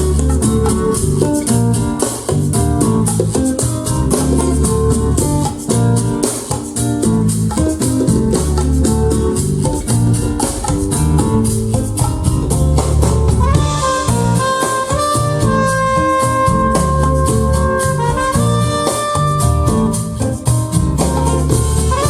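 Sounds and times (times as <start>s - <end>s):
bass: 0.0s - 22.0s
drums: 0.0s - 22.0s
sustained melody line: 8.9s - 16.0s.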